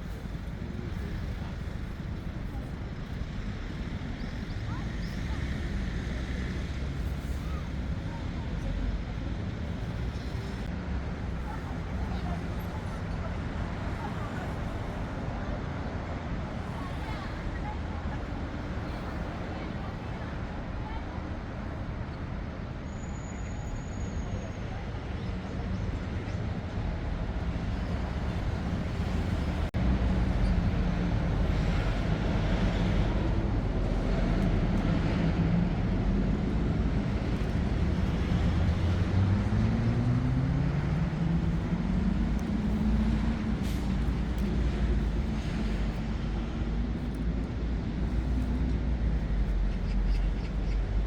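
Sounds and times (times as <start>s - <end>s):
low rumble of passing vehicles: 0.0s - 51.0s
vehicle engine pulling away: 37.7s - 46.2s.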